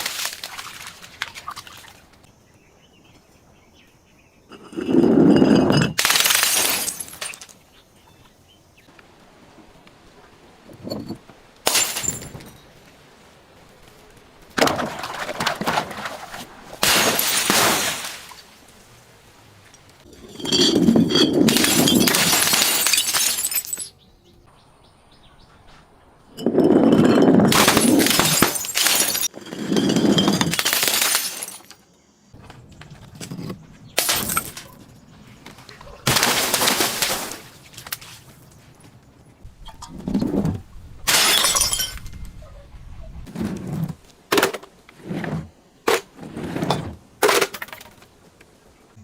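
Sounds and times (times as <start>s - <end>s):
glass crushing and shattering: 4.6s - 7.6s, 11.0s - 12.7s, 16.8s - 18.4s, 20.1s - 24.0s, 26.4s - 31.8s, 33.2s - 34.9s, 36.1s - 37.5s, 41.1s - 42.2s.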